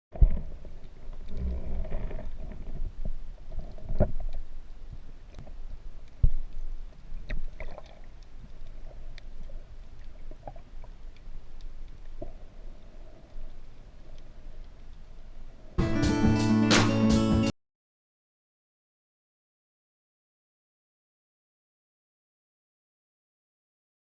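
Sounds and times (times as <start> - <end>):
muffled water movement: 0.1 - 15.8
faint clicks: 0.2 - 15.5.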